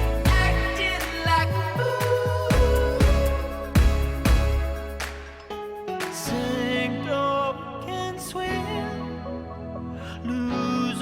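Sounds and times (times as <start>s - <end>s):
song with gliding melody and bass: 0.0s - 11.0s.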